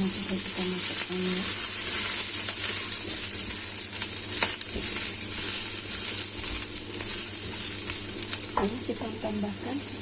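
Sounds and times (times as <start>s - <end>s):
vegetables sizzling in oil: 0.0s - 10.0s.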